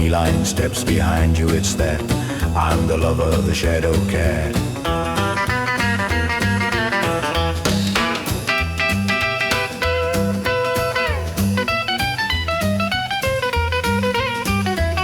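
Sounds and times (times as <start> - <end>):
pulsing bass line: 0.0 - 15.0
steady swing beat: 0.0 - 15.0
electric guitar lead: 3.9 - 15.0.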